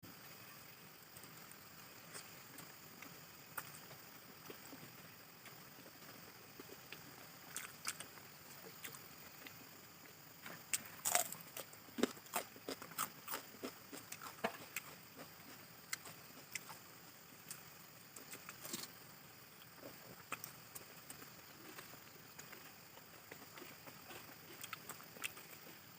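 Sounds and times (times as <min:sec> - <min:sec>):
person chewing: 0:06.5 - 0:09.6, 0:10.6 - 0:18.9, 0:19.6 - 0:25.8.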